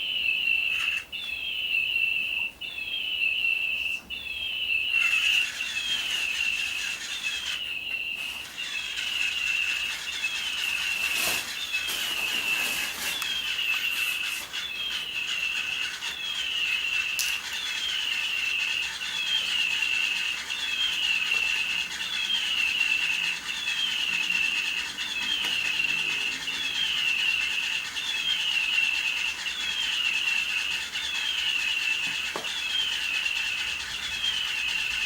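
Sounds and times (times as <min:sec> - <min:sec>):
electronic toy bird chirping: 0:00.0 - 0:35.0.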